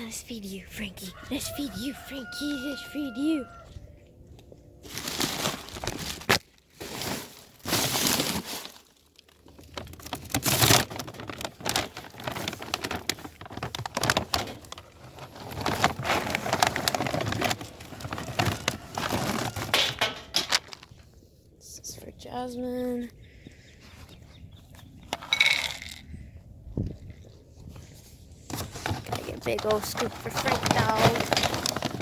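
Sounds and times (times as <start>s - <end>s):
dry dog food kibble rattling: 25.2s - 26.1s, 28.7s - 32.0s.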